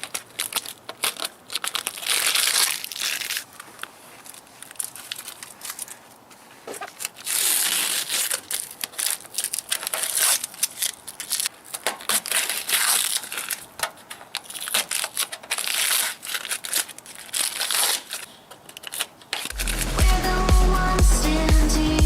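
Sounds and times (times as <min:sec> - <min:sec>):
crinkling and rustling handling: 0:00.0 - 0:19.9
electronic music with heavy bass: 0:19.6 - 0:22.0.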